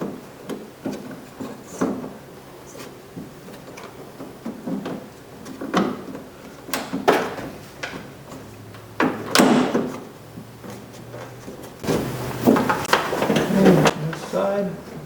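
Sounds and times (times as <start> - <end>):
door handle knocks and rattles: 4.4 - 8.1, 8.8 - 10.0.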